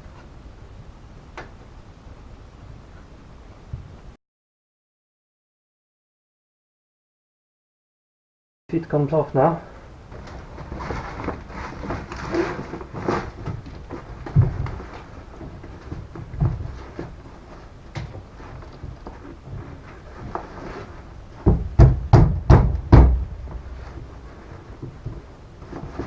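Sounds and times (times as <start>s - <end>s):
heavy thumps: 10.1s - 26.0s.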